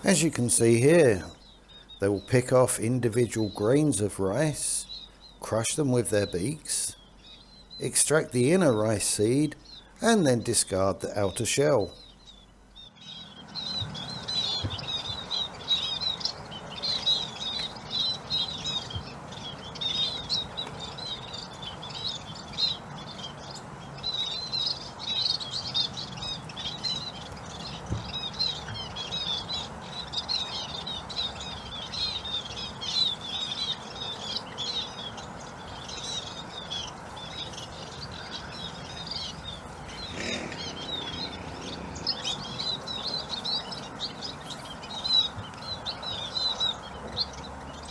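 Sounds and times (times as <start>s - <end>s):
birds chirping: 0.0s - 47.9s
faint background hiss: 0.0s - 47.9s.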